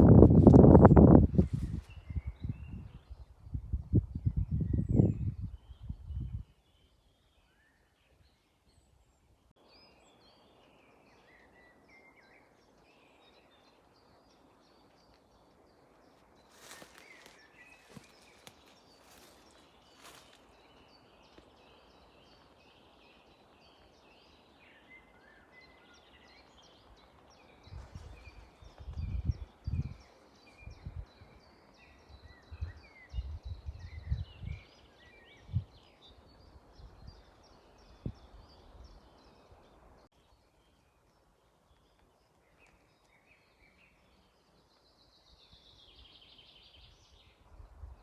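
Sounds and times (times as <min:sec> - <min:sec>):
low buffeting on microphone: 0:00.0 - 0:06.5, 0:27.6 - 0:31.6, 0:32.4 - 0:34.8
songbirds twittering: 0:00.0 - 0:48.0.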